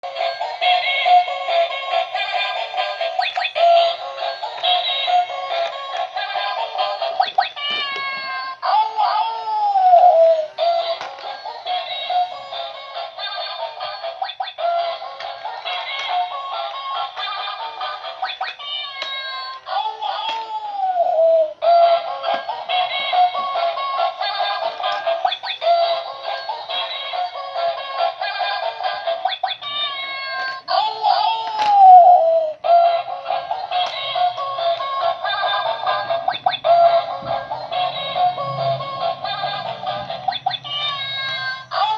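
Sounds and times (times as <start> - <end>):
toy playing synthesized song: 0.0 - 41.9
synthesized singing voice: 30.7 - 41.9.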